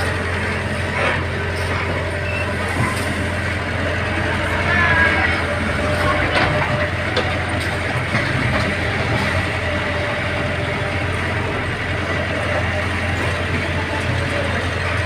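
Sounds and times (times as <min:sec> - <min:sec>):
heavy machinery engine humming: 0:00.0 - 0:15.0.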